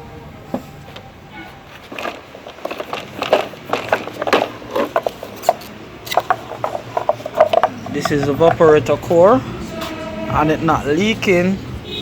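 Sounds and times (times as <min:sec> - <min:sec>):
scraping rustling and clicking: 0:00.5 - 0:10.1.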